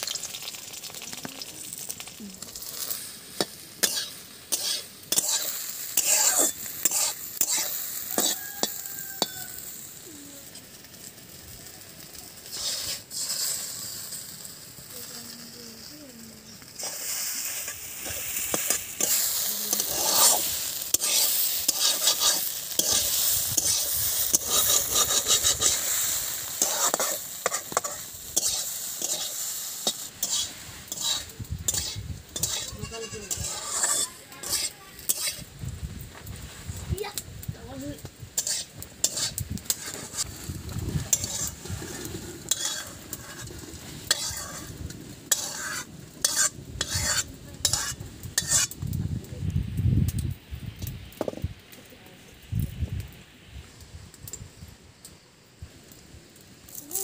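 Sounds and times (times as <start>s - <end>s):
vegetables sizzling in oil: 0.0s - 57.0s
utensil scraping a pan: 2.6s - 9.8s, 12.4s - 14.2s, 16.7s - 35.5s, 38.3s - 48.8s.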